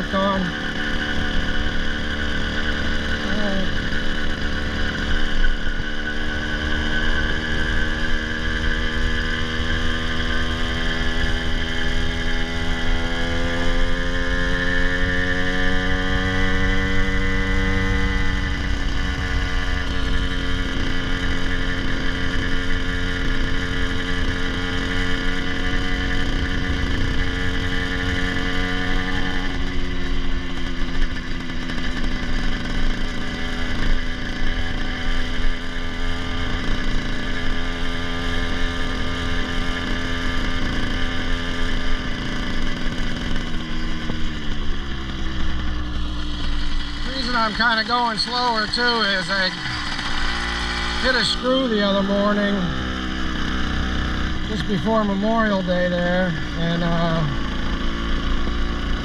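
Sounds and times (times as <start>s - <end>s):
person talking: 0.0s - 0.6s, 3.2s - 3.8s, 47.0s - 49.7s, 51.0s - 52.8s, 54.4s - 57.4s
two-stroke engine running: 0.0s - 59.0s.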